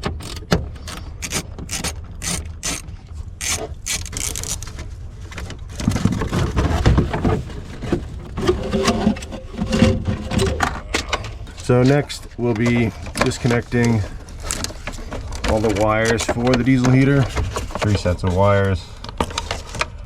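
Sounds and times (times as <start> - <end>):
ducting clicking and rattling: 0.0 - 7.2
scraping and rattling: 0.0 - 20.0.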